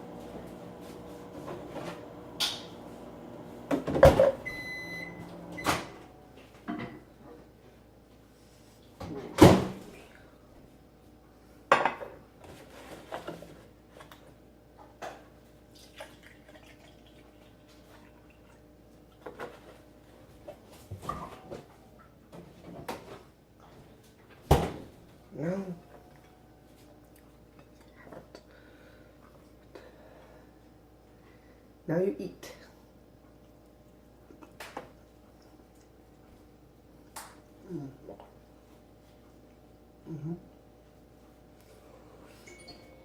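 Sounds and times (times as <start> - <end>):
microwave oven humming: 0.0 - 7.3.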